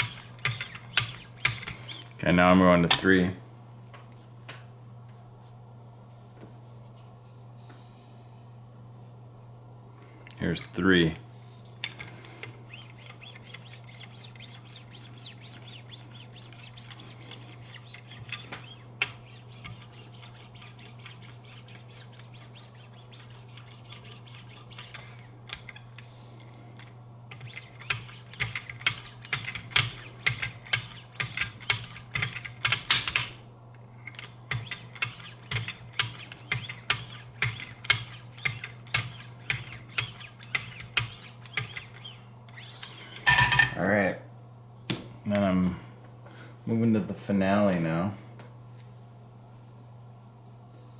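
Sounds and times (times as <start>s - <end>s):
steady low hum: 0.0s - 50.9s
sharpening strokes on knife blade: 12.7s - 25.2s.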